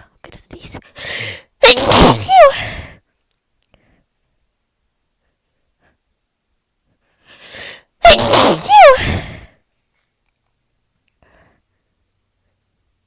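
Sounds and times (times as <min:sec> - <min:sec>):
intake of breath: 0:00.9 - 0:01.5, 0:07.0 - 0:07.9
person sneezing: 0:01.6 - 0:02.9, 0:08.0 - 0:09.6.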